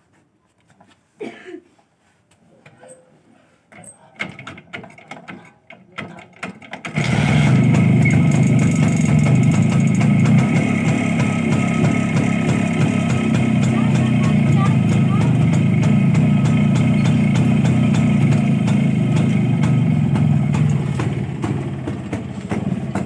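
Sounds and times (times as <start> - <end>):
two-stroke motorcycle engine running: 6.9 - 23.0.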